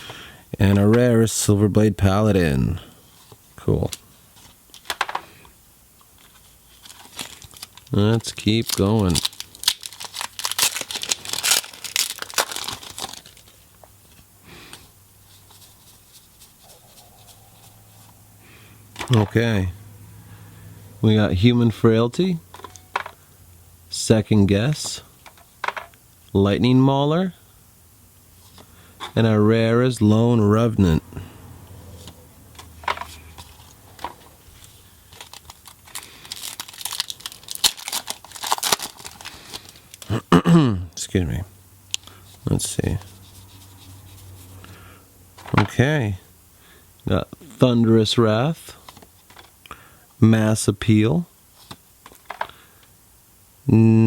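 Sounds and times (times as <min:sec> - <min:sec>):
foil wrapper crinkling and tearing: 0:06.2 - 0:13.6, 0:34.5 - 0:40.2
cards rustling: 0:06.2 - 0:18.2, 0:32.0 - 0:40.1, 0:42.0 - 0:44.6.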